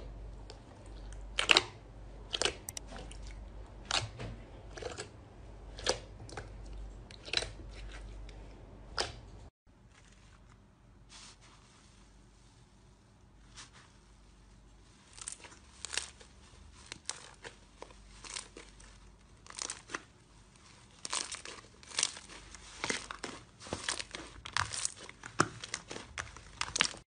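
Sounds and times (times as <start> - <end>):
slime crackling and popping: 15.0 - 27.0.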